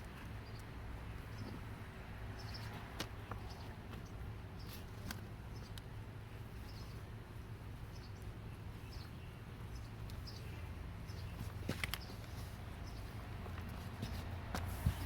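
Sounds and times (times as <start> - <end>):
small bird chirping: 2.4 - 2.8, 6.6 - 7.0, 7.9 - 13.3.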